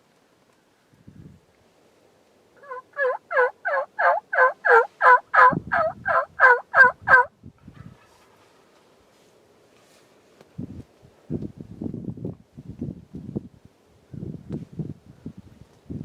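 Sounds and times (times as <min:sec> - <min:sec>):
wild turkey yelping: 0:02.6 - 0:07.3.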